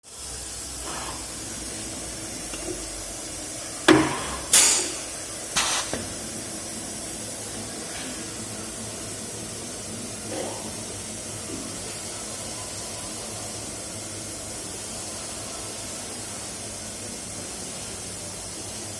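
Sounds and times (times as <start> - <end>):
steady air hiss: 0.1 - 18.9
pneumatic clack: 3.9 - 6.2
short air blasts: 4.0 - 6.1.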